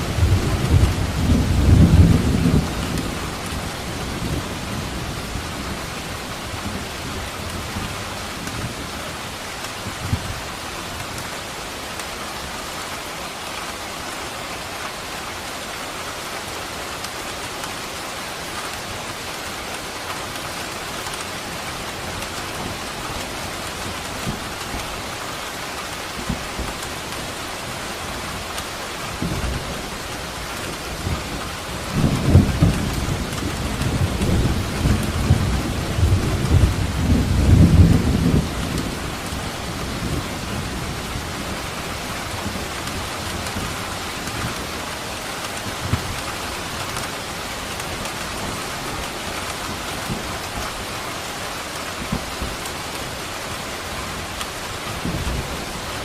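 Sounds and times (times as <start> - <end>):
thunder rumbling: 0.0 - 8.8, 29.1 - 44.8
steady rain falling: 0.0 - 56.0.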